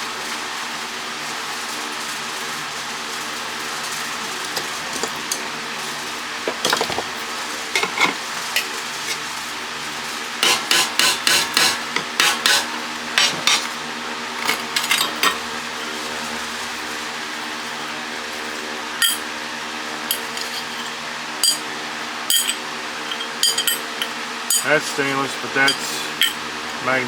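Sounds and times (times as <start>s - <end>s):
electric fan humming: 0.0s - 27.0s
metal clinks and knocks: 20.1s - 21.7s, 22.3s - 25.0s, 25.7s - 26.4s.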